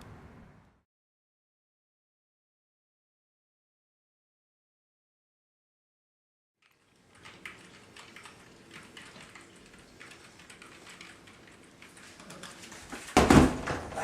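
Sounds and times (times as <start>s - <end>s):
small clicks: 6.6s - 12.6s
loud heavy thump: 13.2s - 14.0s.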